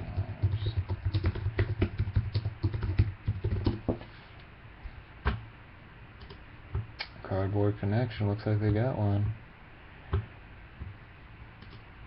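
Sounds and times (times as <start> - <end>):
fast typing on keyboard: 0.0 - 3.8.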